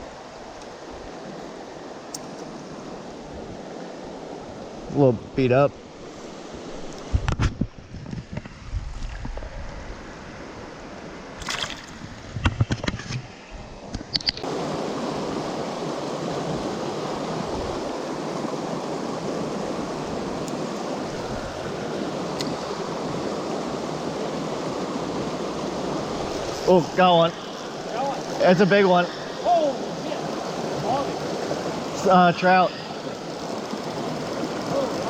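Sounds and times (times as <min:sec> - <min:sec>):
river rushing: 0:00.0 - 0:07.1, 0:14.3 - 0:35.0.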